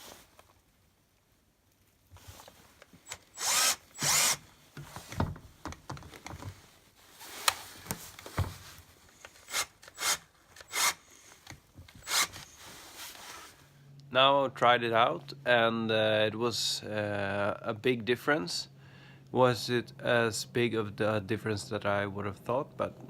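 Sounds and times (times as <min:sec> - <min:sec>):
drill clicks: 0:03.0 - 0:04.4, 0:09.4 - 0:11.0, 0:12.0 - 0:12.4
cordless drill running in bursts: 0:03.1 - 0:04.4, 0:09.5 - 0:11.0, 0:12.0 - 0:12.5.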